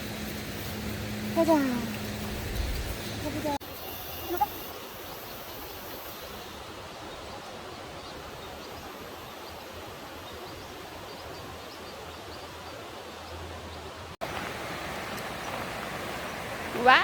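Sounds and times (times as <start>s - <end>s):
fast-flowing stream rushing: 12.8s - 17.0s.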